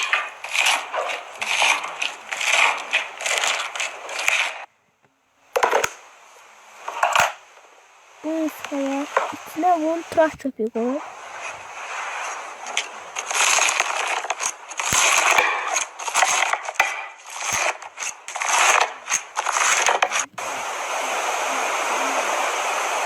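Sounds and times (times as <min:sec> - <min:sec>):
slime crackling and scraping: 0:00.0 - 0:04.7, 0:08.4 - 0:20.3
steady hiss: 0:00.0 - 0:23.0.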